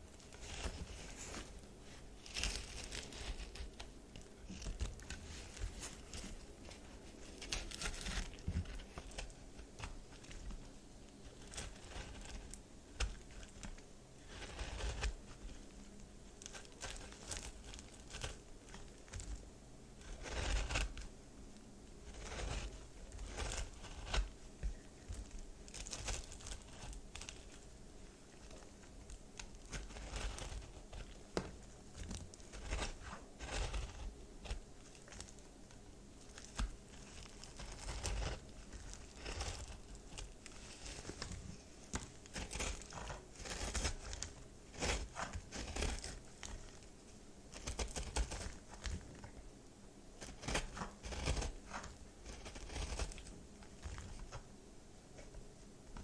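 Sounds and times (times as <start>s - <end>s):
soap crunching as it is cut: 29.5s - 35.3s, 41.9s - 46.8s, 47.6s - 49.0s, 50.2s - 54.1s.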